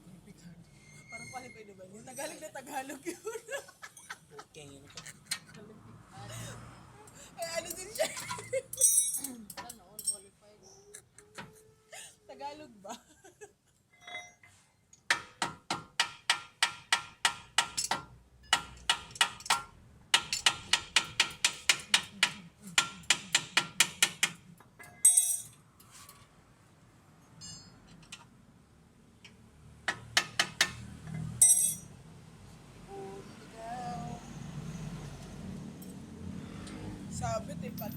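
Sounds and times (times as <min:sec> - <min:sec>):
hammer striking steel: 0:15.1 - 0:25.5, 0:31.4 - 0:31.9.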